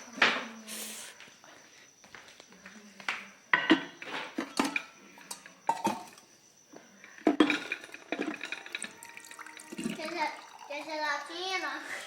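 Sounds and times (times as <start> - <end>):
dishes clinking: 3.5 - 6.2, 7.2 - 10.7
water filling a container: 7.6 - 11.9.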